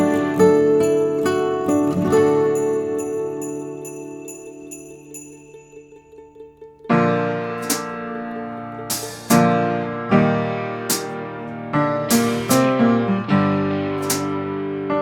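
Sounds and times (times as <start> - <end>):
keyboard chords: 7.2 - 15.0
sharp bright hits: 7.6 - 8.0, 8.9 - 9.7, 10.9 - 11.5, 12.1 - 12.9, 14.0 - 14.4.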